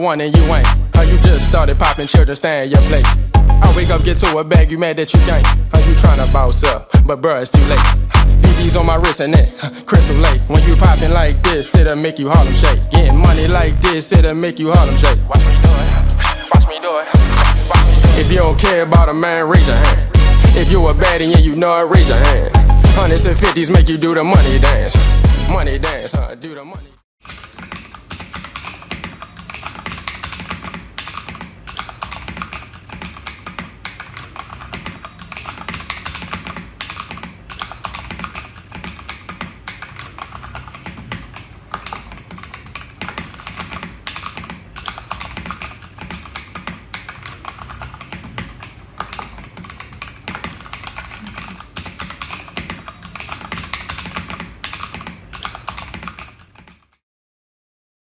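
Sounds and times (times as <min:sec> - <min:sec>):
mechanical keyboard typing: 0:11.2 - 0:15.3, 0:27.3 - 0:57.0.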